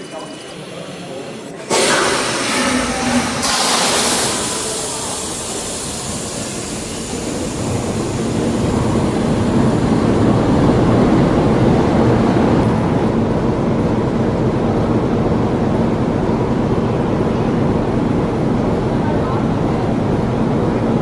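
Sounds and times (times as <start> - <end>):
big engine running: 1.4 - 21.0
hiss burst: 1.7 - 9.6.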